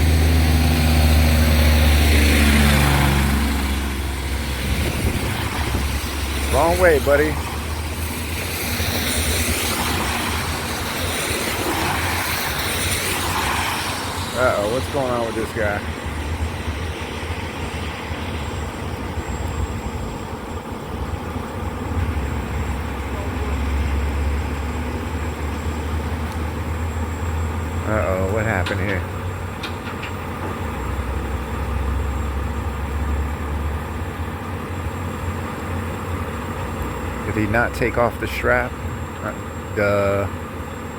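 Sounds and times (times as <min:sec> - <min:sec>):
vehicle engine humming: 0:00.0 - 0:40.9.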